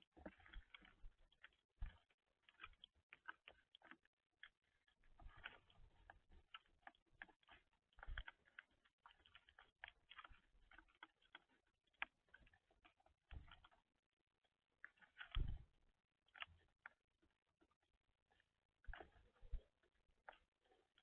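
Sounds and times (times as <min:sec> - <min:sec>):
birds pecking at seed: 0:00.0 - 0:14.0.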